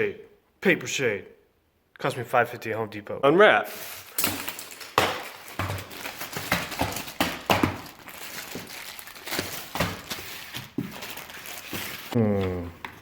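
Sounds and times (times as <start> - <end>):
paper packaging crinkling: 3.7 - 12.2.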